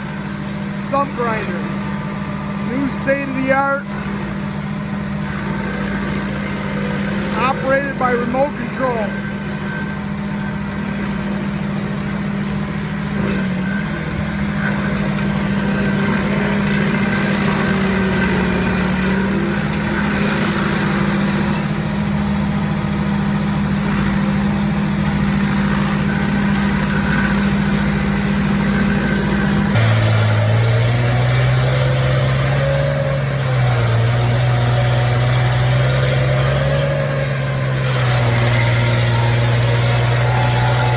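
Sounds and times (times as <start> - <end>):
stump grinder engine running: 0.0 - 40.9.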